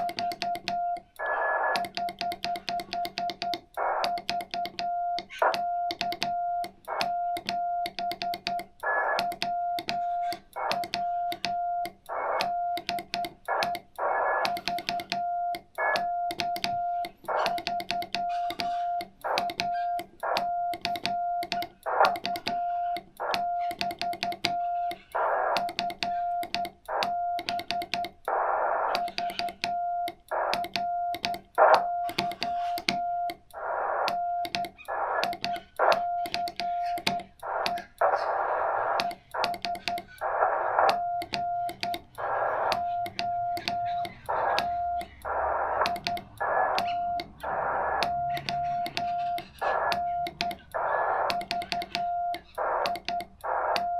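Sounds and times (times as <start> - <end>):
keying clicks: 0.0 - 38.2, 38.9 - 53.9
morse code tone: 0.0 - 53.9
radio band hiss: 24.6 - 26.3, 28.3 - 29.4, 34.9 - 41.0, 42.1 - 53.8.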